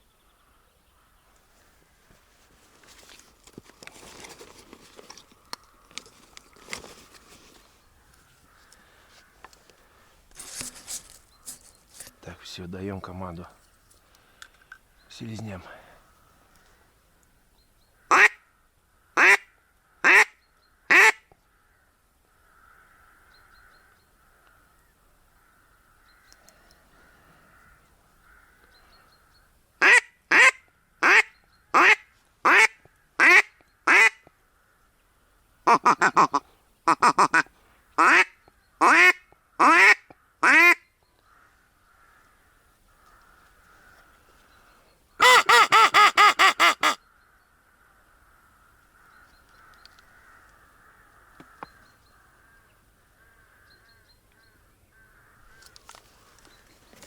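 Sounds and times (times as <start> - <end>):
duck call quacking: 18.1 - 18.4, 31.8 - 34.1, 35.7 - 40.8, 45.2 - 47.0.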